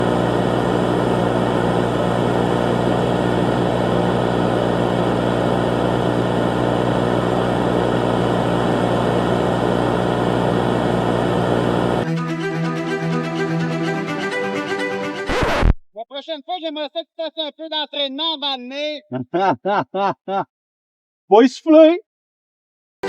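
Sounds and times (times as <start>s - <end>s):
propeller aircraft engine droning: 0.0s - 14.2s
fiddle music: 12.0s - 15.8s.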